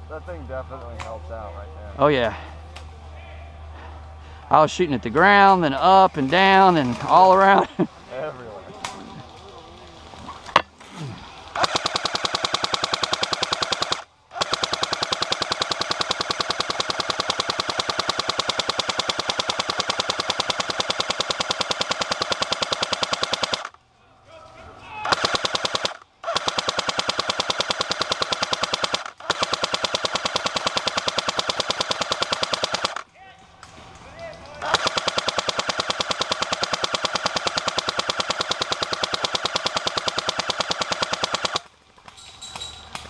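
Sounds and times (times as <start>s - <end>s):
airsoft gun full-auto bursts: 11.6s - 23.8s, 25.1s - 33.1s, 34.6s - 41.7s.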